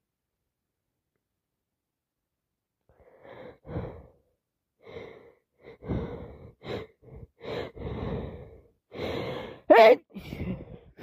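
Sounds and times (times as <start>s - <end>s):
person sniffing and breathing hard: 3.0s - 11.0s.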